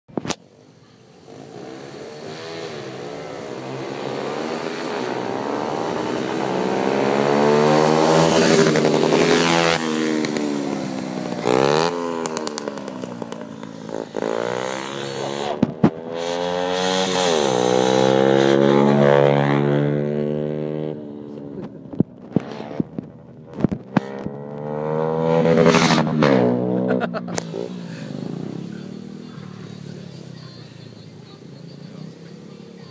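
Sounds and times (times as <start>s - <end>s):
small motorbike engines revving: 1.0s - 32.9s.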